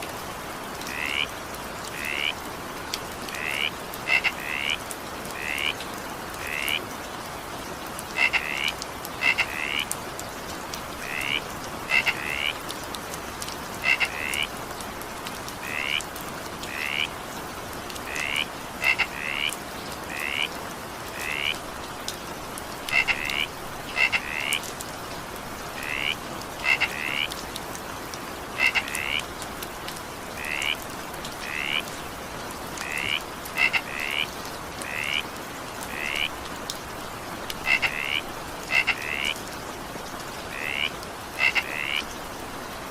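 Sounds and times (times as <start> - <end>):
steady rain hiss: 0.0 - 42.9
frogs croaking: 0.8 - 2.5, 3.2 - 7.0, 8.0 - 10.0, 10.8 - 12.7, 13.7 - 14.6, 15.5 - 17.2, 17.9 - 22.0, 22.8 - 24.7, 25.6 - 27.4, 28.4 - 29.4, 30.1 - 39.8, 40.4 - 42.3.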